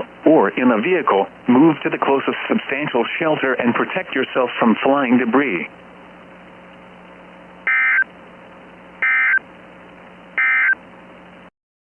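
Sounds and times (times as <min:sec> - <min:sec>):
low hum and hiss: 0:00.0 - 0:11.5
warbling digital data tones: 0:07.7 - 0:08.1, 0:09.0 - 0:09.4, 0:10.4 - 0:10.8.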